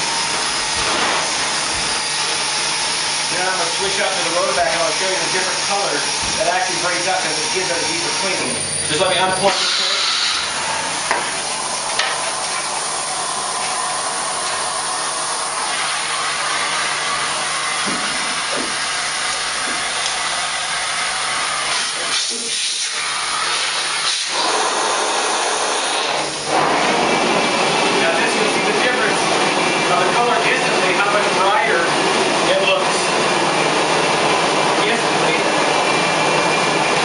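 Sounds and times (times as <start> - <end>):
carpet extraction vacuum suction hiss: 0.0 - 11.7, 12.7 - 26.7.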